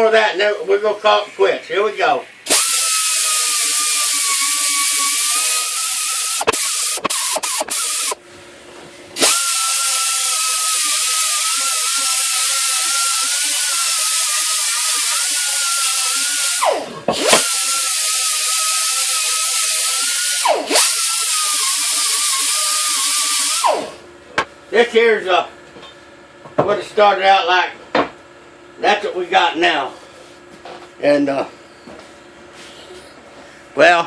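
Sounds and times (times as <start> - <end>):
electric grinder grinding steel: 2.5 - 8.2, 9.2 - 24.0.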